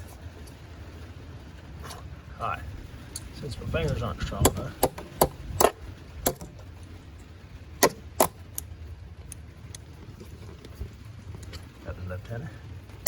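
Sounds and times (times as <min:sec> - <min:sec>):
sharp knocks on plastic housing: 0:04.4 - 0:06.7, 0:07.8 - 0:08.4.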